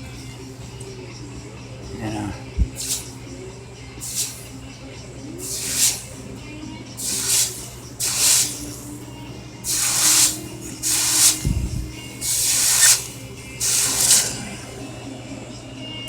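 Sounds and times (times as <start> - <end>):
hot blade sizzling in quench: 2.8 - 3.2, 4.0 - 4.6, 5.4 - 6.3, 7.0 - 14.5.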